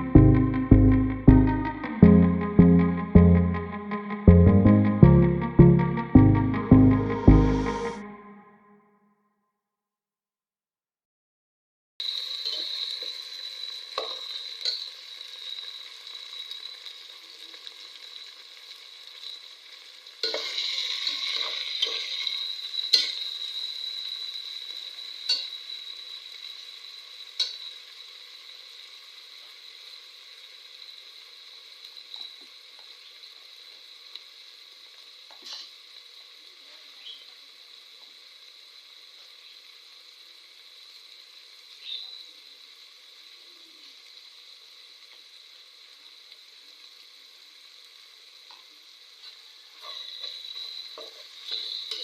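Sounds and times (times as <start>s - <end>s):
food sizzling in hot oil: 12.0s - 52.0s.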